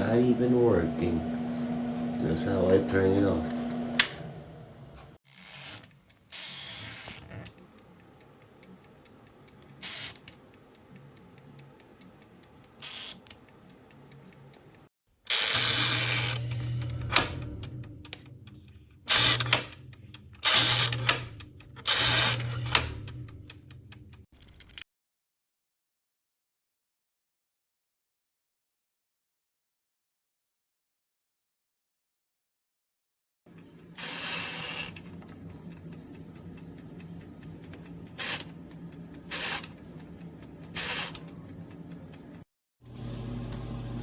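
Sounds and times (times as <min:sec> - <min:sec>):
clockwork timer ticking: 0:07.4 - 0:24.3, 0:33.5 - 0:42.5.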